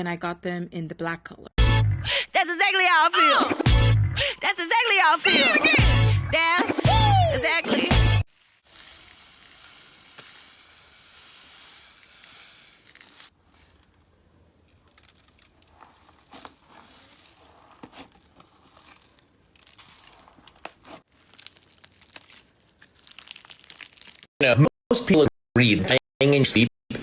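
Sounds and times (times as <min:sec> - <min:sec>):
slime pressed and stretched by hand: 0:14.7 - 0:24.3.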